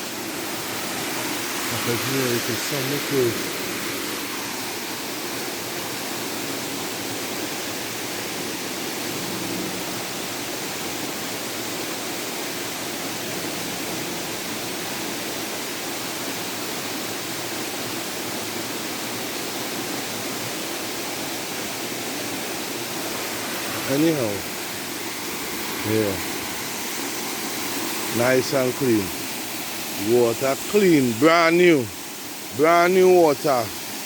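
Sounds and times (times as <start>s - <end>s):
waterfall rushing: 0.0s - 34.0s.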